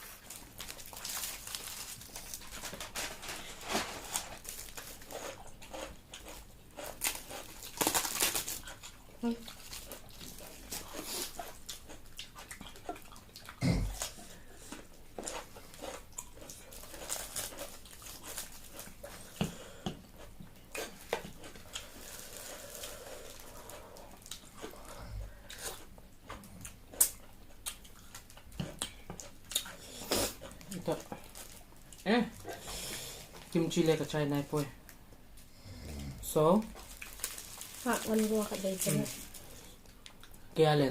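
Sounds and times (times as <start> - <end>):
chewing and lip smacks: 8.6 - 17.0, 25.5 - 29.8.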